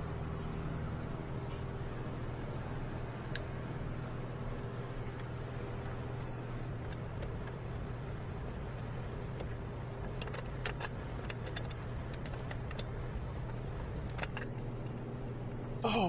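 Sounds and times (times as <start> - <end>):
steady low hum: 0.0 - 16.0
metallic clicks of tools: 8.6 - 15.0.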